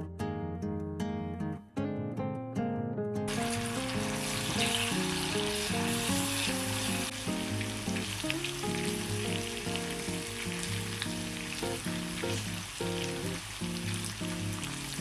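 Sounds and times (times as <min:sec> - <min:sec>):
oil sizzling and crackling: 0:03.3 - 0:15.0
soft background music: 0:03.3 - 0:15.0.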